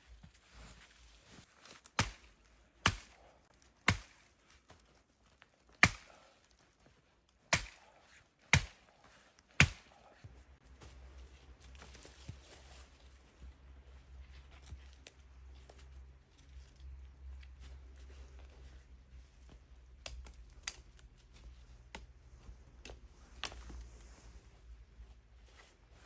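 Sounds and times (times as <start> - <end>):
axe chopping wood: 1.8 - 3.2, 3.8 - 4.3, 5.8 - 6.3, 7.5 - 8.9, 9.6 - 10.0.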